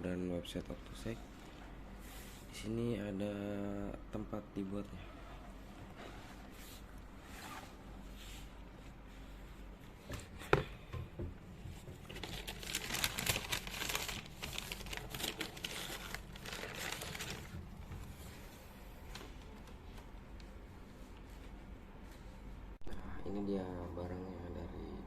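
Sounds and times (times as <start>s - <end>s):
paper crinkling and rustling: 11.9s - 20.0s.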